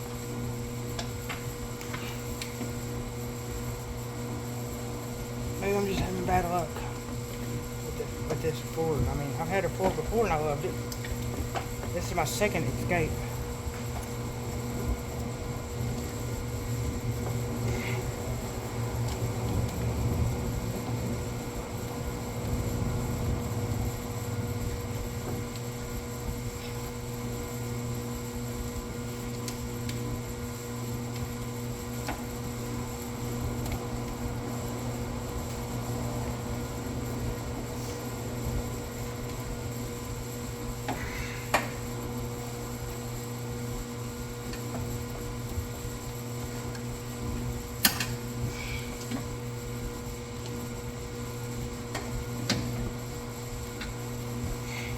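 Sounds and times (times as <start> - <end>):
machine hum: 0.0 - 54.9.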